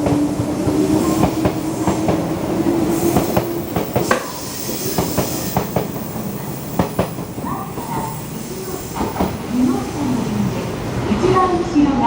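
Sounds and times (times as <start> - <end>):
train rumble and hiss: 0.0 - 12.0
train wheels clacking over rail joints: 3.0 - 8.2.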